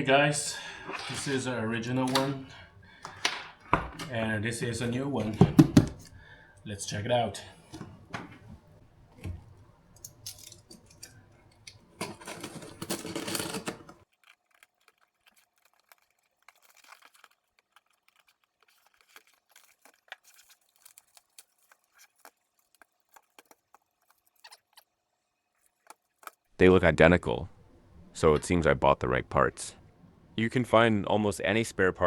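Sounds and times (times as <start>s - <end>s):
rustling handling noise: 0.4s - 24.4s.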